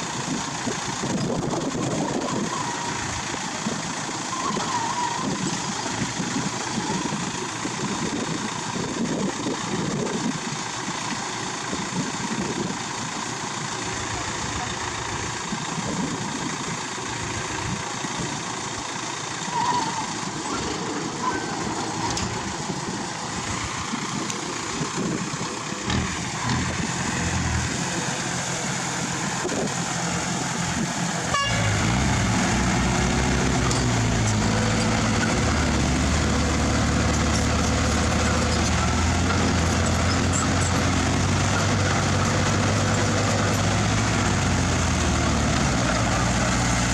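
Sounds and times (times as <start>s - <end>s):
diesel earthmoving machinery: 0.0s - 46.9s
loud engine drone: 19.6s - 46.9s.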